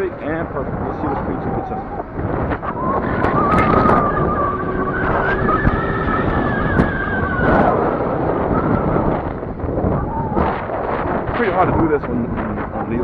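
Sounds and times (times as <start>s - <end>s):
rushing road noise: 2.0s - 12.8s
electric motor whine: 2.1s - 10.3s.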